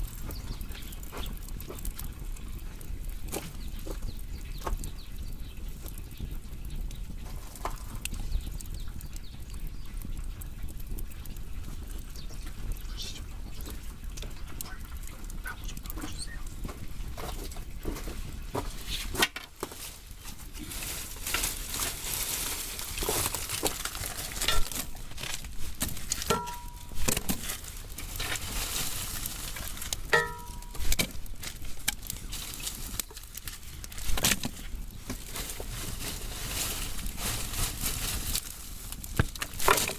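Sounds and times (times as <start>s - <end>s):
wood fire crackling and popping: 0.0s - 39.9s
fire hissing: 18.7s - 39.8s.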